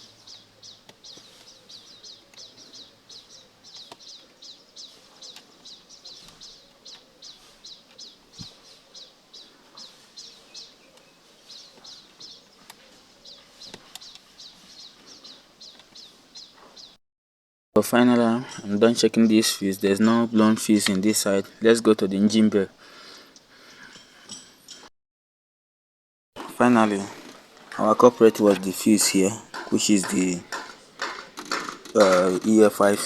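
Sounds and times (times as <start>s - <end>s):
small bird chirping: 0.0s - 17.0s.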